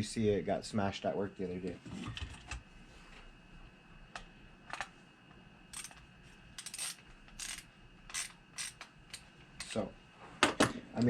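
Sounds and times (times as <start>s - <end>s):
small screws and tools clinking: 5.7s - 6.0s, 6.6s - 9.8s.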